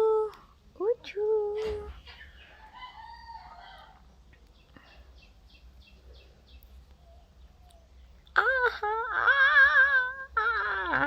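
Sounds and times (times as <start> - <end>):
rooster-like bird crow: 2.4 - 4.1.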